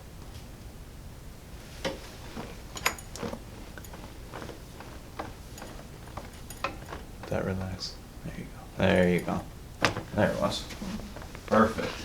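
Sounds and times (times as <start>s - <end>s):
chiropractic adjustment clicks: 9.1s - 10.2s.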